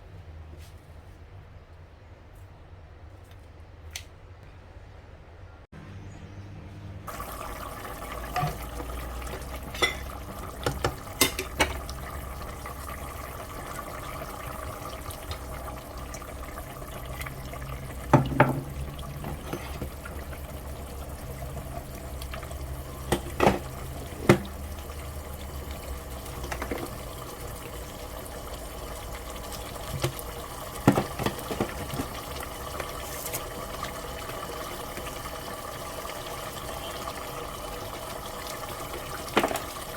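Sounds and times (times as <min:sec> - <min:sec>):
pot bubbling on stove: 0:07.1 - 0:39.9
utensil clinking against pot: 0:09.6 - 0:11.8.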